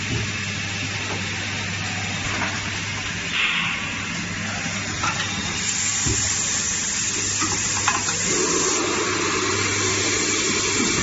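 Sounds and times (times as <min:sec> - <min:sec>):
low hum: 0:01.9 - 0:05.9
machine hissing: 0:03.2 - 0:11.0.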